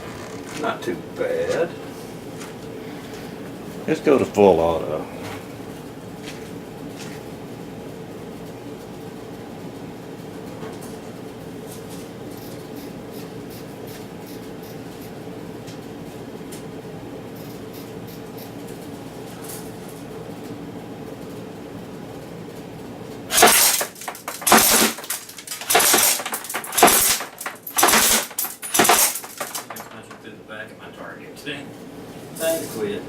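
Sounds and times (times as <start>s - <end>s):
steady low hum: 0.0s - 33.0s
airsoft rifle full-auto fire: 23.3s - 29.6s
pellets clattering into box: 23.3s - 30.0s.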